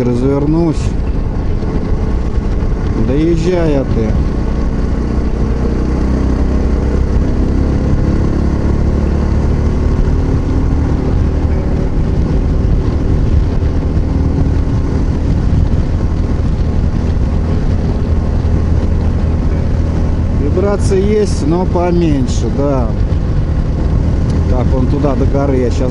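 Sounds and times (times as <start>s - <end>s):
motorcycle engine cruising: 0.0s - 25.9s
wind rushing over microphone: 0.0s - 25.9s.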